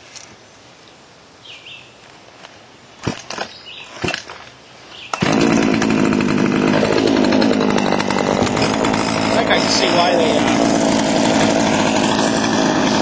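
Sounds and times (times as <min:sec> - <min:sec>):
chainsaw engine running: 0:05.2 - 0:13.0.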